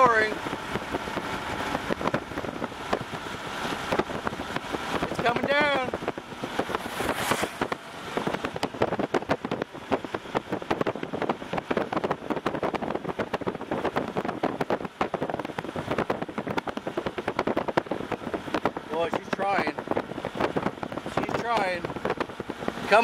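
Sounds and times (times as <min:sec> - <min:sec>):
car road and wind noise: 0:00.0 - 0:23.0.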